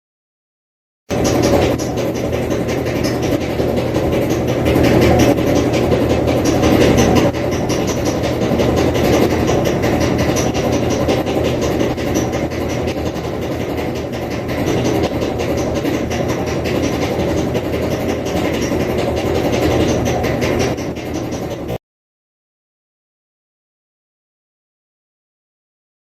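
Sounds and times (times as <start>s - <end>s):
clothes dryer drum knocking: 1.1s - 21.8s.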